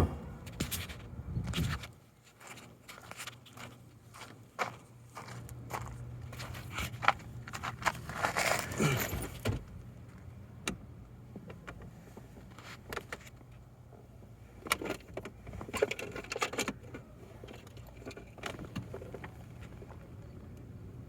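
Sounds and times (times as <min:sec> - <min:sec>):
low hum: 0:00.0 - 0:01.5
objects clicking and jangling: 0:07.7 - 0:09.5.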